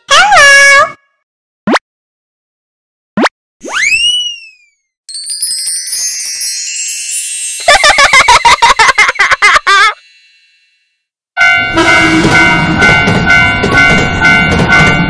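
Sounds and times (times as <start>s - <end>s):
railroad crossing bell ringing: 5.1s - 15.0s.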